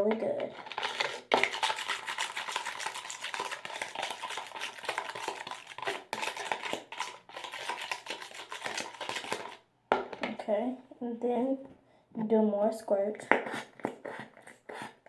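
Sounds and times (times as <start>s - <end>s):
spoon stirring in a bowl: 0.1s - 10.3s, 13.2s - 15.0s.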